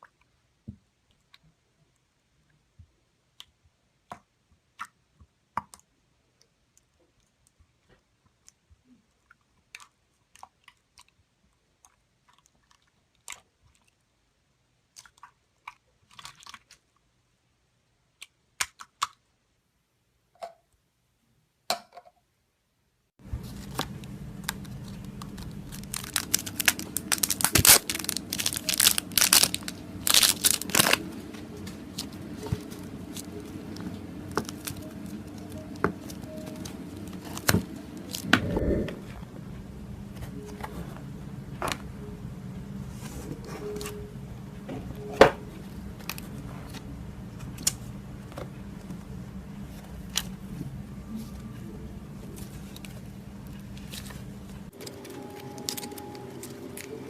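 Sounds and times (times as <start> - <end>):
background hum: 23.2 - 57.0
slime crackling and popping: 23.5 - 31.1, 31.8 - 38.2.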